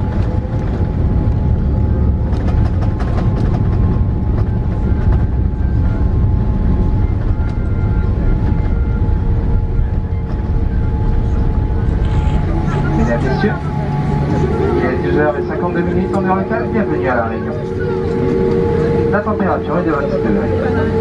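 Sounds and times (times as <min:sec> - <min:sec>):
aircraft cabin rumble: 0:00.0 - 0:21.0
steady engine tones: 0:00.0 - 0:21.0
rattles and knocks: 0:02.2 - 0:05.3.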